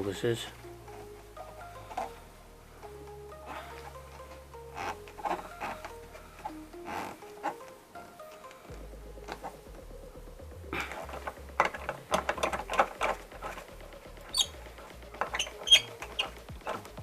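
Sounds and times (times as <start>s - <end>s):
metal clicks and knocks: 10.8s - 17.0s
short high squeaks: 14.2s - 16.9s.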